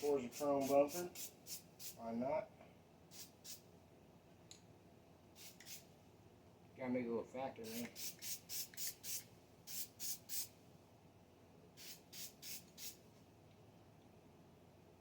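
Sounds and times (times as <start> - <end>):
spray can hissing: 0.1 - 2.0, 3.1 - 3.6, 5.4 - 5.8, 7.6 - 10.5, 11.8 - 13.0.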